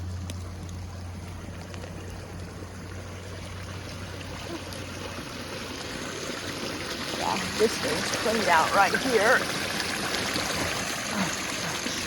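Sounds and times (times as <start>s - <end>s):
rainwater running through ditch: 0.0s - 12.0s.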